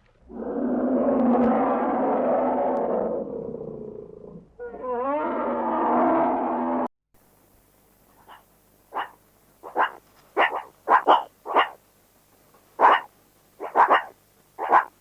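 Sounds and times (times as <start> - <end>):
animal barking: 8.2 - 11.8, 12.8 - 15.0.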